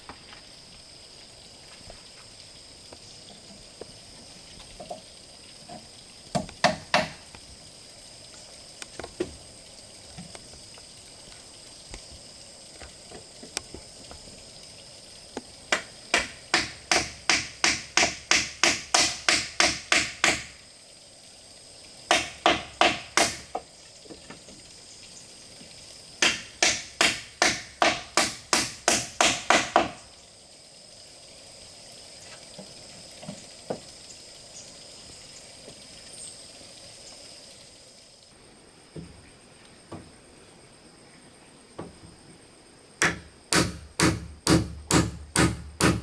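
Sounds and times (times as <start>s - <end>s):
hand tool blows: 43.0s - 46.0s.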